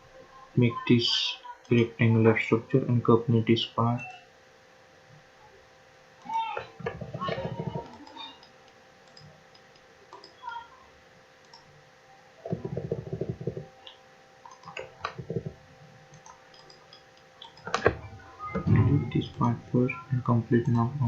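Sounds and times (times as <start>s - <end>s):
faint electrical hum: 0.0s - 21.0s
computer mouse clicks: 7.3s - 10.4s, 11.4s - 11.7s, 12.5s - 18.0s.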